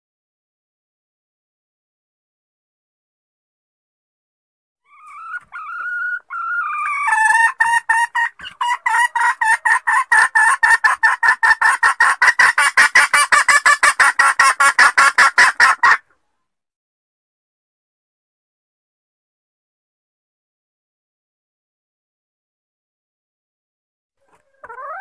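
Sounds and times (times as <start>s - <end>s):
hen junglefowl calling: 4.8s - 16.1s, 24.2s - 25.0s.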